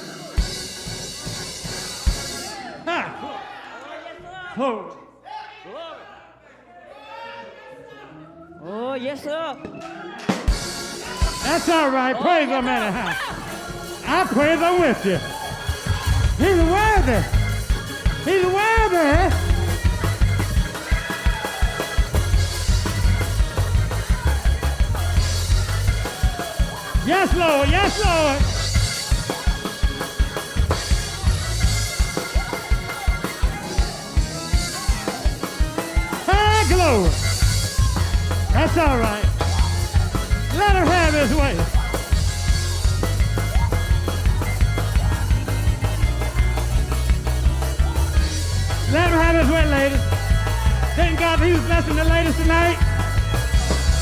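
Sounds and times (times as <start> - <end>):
rapid drum-kit hits: 0.0 - 2.7, 10.3 - 11.8, 12.8 - 54.0
gospel band playing: 0.0 - 3.8, 9.6 - 54.0
heavy bass line: 12.9 - 54.0.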